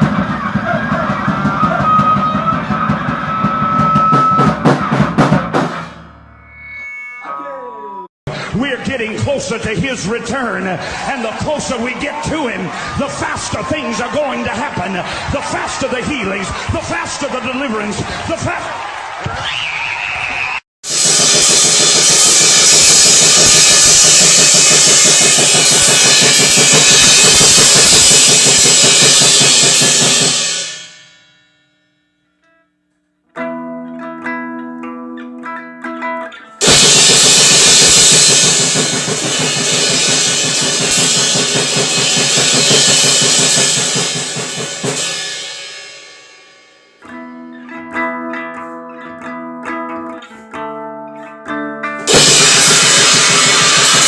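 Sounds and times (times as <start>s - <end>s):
distorted noise music with drums: 0.0s - 6.2s, 20.9s - 30.8s, 36.6s - 45.2s, 52.1s - 54.0s.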